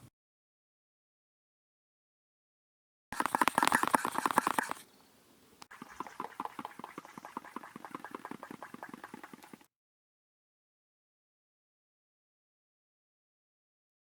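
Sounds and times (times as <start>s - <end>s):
whisk clicking against bowl: 3.2s - 4.8s, 5.7s - 9.6s.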